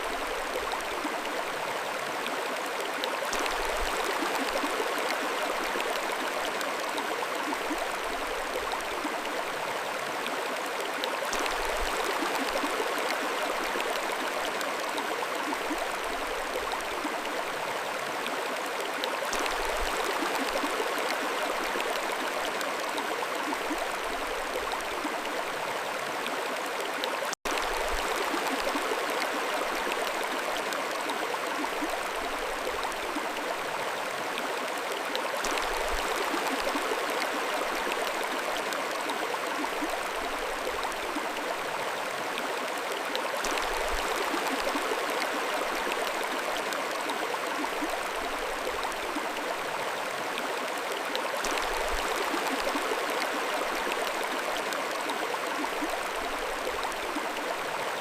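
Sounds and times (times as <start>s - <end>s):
mountain stream flowing: 0.0s - 58.0s.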